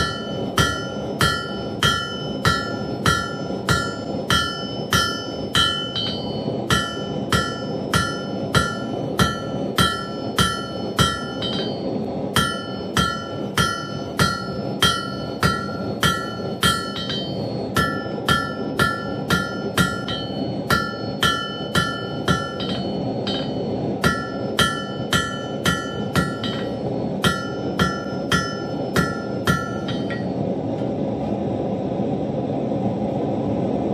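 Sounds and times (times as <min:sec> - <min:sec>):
hammer striking steel on anvil: 0:00.0 - 0:30.5
steady rushing noise: 0:00.0 - 0:33.9.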